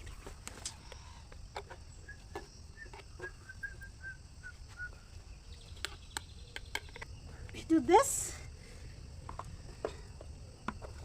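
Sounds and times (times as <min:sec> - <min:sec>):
bird chirping: 0:00.9 - 0:07.4.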